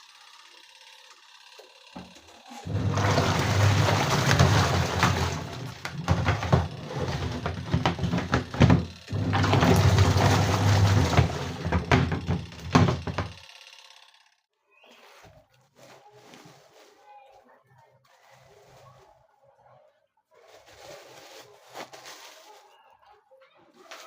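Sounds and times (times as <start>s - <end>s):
washing machine churning: 0.0s - 14.1s.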